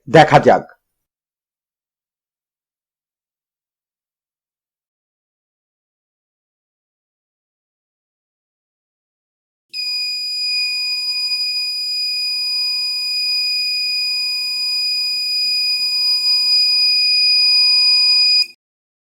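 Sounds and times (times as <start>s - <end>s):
alarm buzzer high-pitched tone: 9.8s - 18.6s.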